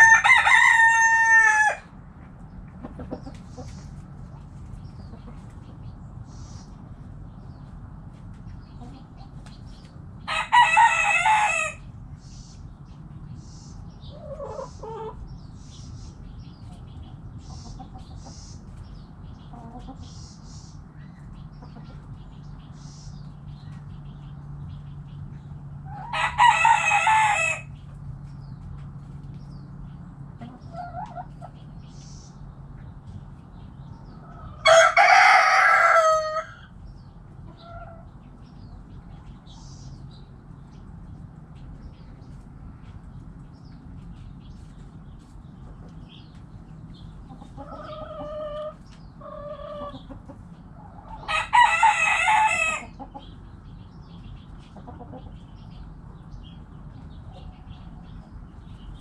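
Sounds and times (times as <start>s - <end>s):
rooster crowing: 0.0s - 1.9s, 10.3s - 11.8s, 25.9s - 27.7s, 34.3s - 36.7s, 51.2s - 53.0s
hens clucking: 0.0s - 59.0s
small birds chirping: 0.0s - 59.0s.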